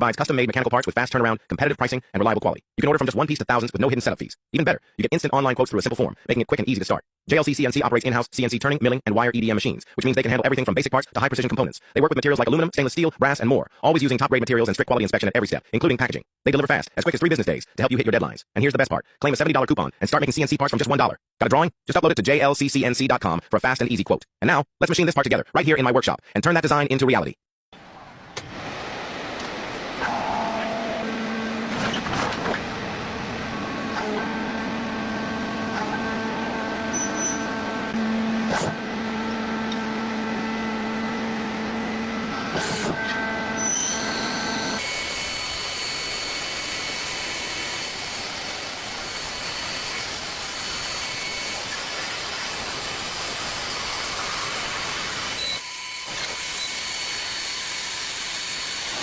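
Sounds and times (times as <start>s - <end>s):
machine whine: 27.8s - 59.0s.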